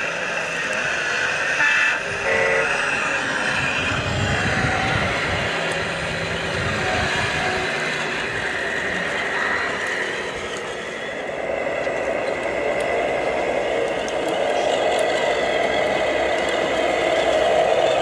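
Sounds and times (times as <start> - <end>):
heavy low rumble: 3.6 - 7.6.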